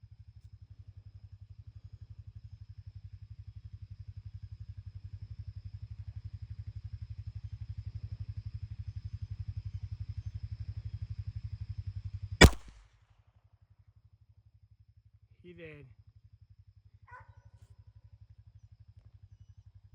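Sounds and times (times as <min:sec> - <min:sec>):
pistol shot: 0:12.4 - 0:12.8.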